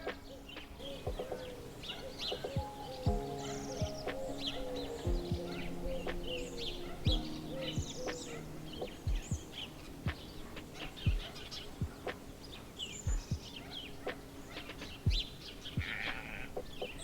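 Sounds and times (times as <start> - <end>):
soft low thumps: 2.6 - 4.0, 7.1 - 8.2, 9.0 - 10.3, 11.1 - 12.0, 15.1 - 16.0.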